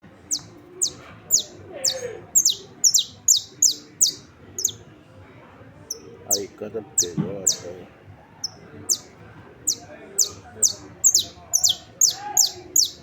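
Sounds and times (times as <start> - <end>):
finch singing high notes: 0.3 - 4.8, 5.9 - 7.8, 8.4 - 9.1, 9.7 - 13.0.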